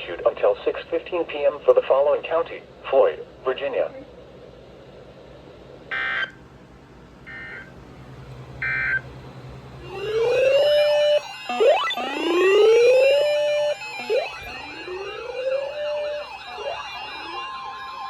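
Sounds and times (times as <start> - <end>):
low hum: 4.2 - 17.4
rising siren-like wail: 7.3 - 18.0.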